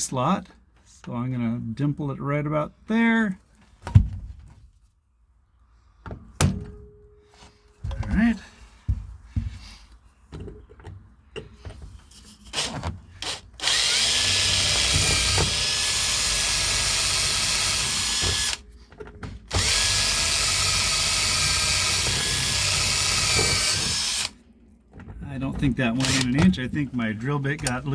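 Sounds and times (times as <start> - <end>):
electric drill drilling into metal: 12.5 - 18.6, 19.5 - 24.4, 26.0 - 26.4
light clicks of drill bit: 26.0 - 26.4.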